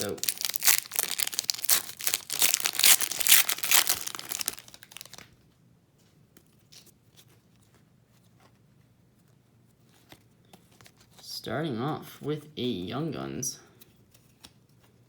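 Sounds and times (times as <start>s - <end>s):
cards being handled: 0.0s - 5.4s, 13.8s - 15.0s
wrapper tearing and crinkling: 0.0s - 5.4s.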